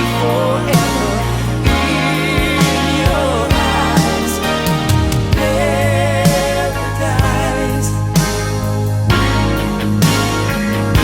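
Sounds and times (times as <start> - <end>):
pop ballad held chords: 0.0 - 11.0
drum hits: 1.7 - 7.4.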